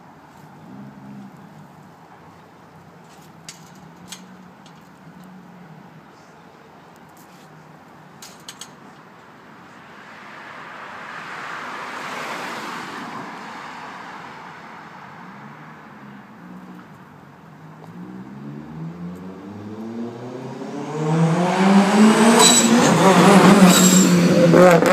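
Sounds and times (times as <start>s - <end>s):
car engine accelerating: 17.7s - 24.9s.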